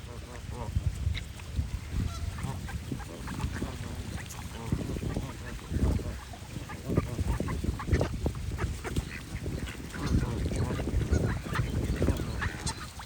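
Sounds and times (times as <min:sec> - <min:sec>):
ducks quacking: 0:00.0 - 0:13.0
geese honking: 0:01.9 - 0:13.0.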